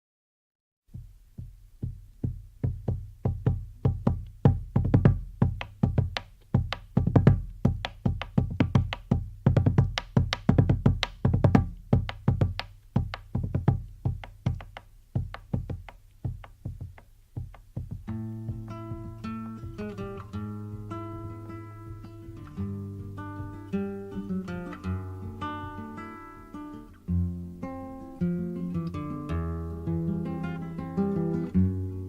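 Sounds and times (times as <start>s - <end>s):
plucked notes over low bass: 15.2s - 25.8s.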